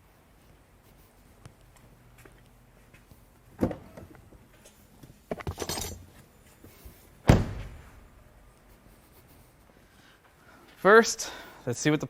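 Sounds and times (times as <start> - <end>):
loud thunk: 7.3 - 7.8.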